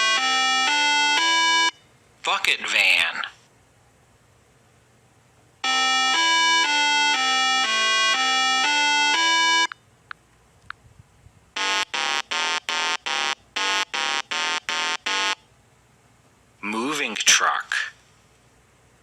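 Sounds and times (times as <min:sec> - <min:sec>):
harsh electronic buzzer pulses: 0:00.0 - 0:01.8, 0:05.6 - 0:09.7, 0:11.6 - 0:15.4.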